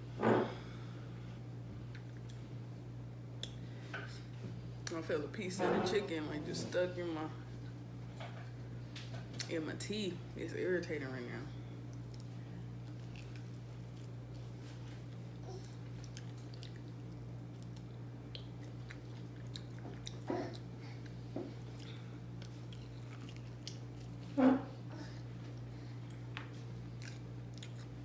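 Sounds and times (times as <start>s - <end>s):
steady low hum: 0.0s - 28.0s
person chewing: 11.9s - 24.4s, 25.4s - 28.0s.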